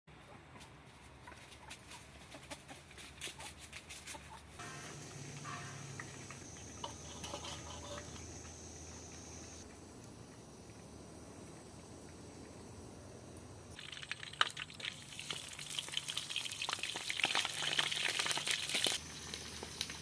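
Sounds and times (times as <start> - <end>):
chickens clucking: 0.2 - 9.6
low hum: 4.6 - 13.8.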